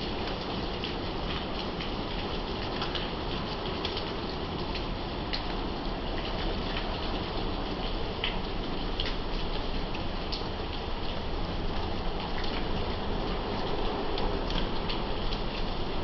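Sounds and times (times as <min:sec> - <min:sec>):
rain falling steadily: 0:00.0 - 0:16.0.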